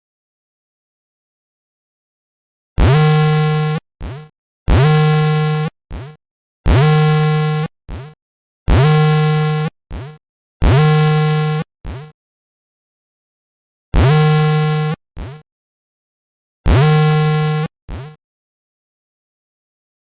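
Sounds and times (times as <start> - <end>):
buzzy electronic alert tone: 16.7 - 18.2.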